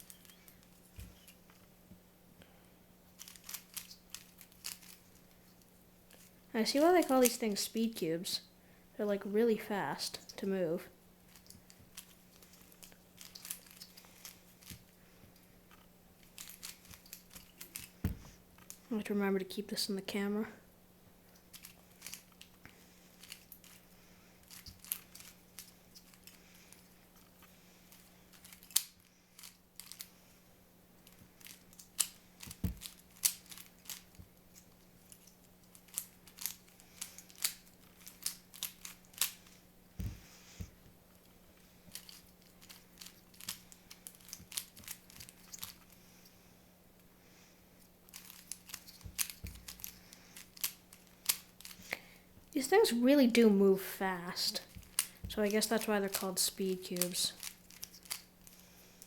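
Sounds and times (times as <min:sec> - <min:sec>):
speed cube clicking: 0:35.8 - 0:39.5, 0:41.9 - 0:45.8, 0:48.1 - 0:51.8, 0:57.4 - 0:58.6.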